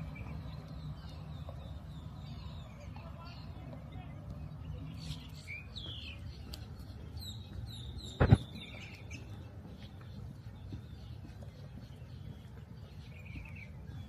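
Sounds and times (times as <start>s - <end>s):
low outdoor rumble: 0.0s - 14.0s
small birds chirping: 0.0s - 14.0s
brief low thump: 8.2s - 8.4s.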